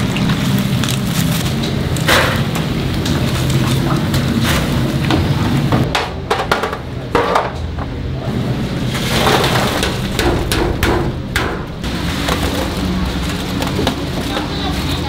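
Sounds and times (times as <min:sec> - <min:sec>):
steady low hum: 0:00.0 - 0:15.0
kitchen utensils clattering: 0:08.7 - 0:15.0.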